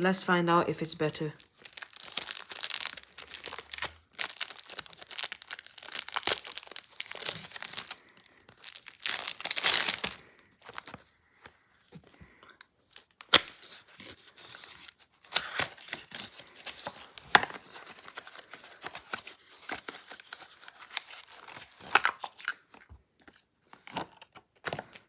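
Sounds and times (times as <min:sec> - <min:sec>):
packaging tearing and crinkling: 0:01.4 - 0:11.0, 0:13.0 - 0:22.6.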